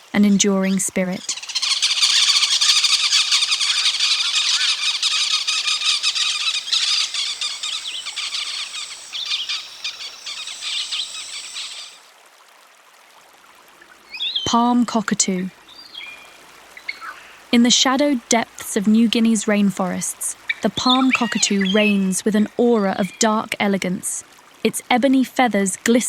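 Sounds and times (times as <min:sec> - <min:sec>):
parakeets squealing: 0:01.1 - 0:12.1.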